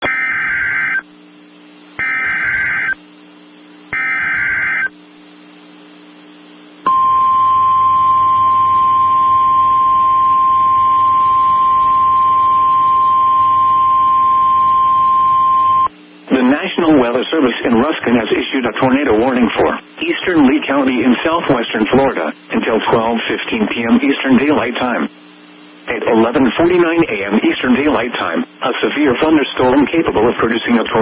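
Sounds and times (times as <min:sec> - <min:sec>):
screeching digital data bursts: 0:00.0 - 0:01.1, 0:02.0 - 0:03.0, 0:03.9 - 0:05.0
steady warning alarm tone: 0:00.0 - 0:01.2, 0:02.0 - 0:03.1, 0:03.8 - 0:05.0, 0:06.8 - 0:15.9.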